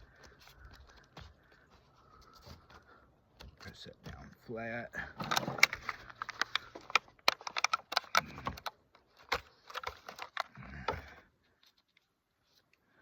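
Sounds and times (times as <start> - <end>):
sharp clicks and light taps: 5.2 - 10.5.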